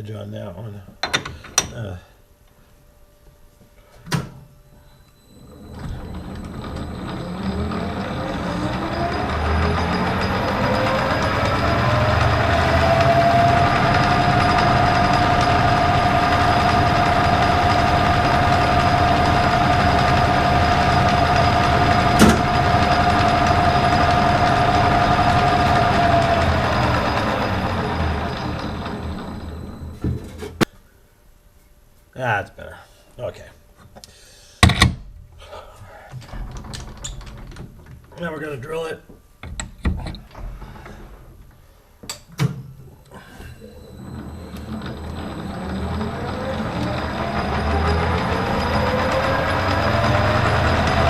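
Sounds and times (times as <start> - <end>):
metal lathe running: 5.5 - 30.0, 43.8 - 51.0.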